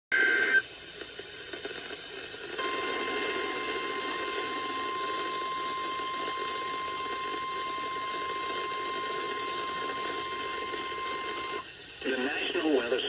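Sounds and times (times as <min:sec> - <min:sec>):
radio hiss: 0:00.1 - 0:13.0
steady high alarm tone: 0:02.6 - 0:11.6.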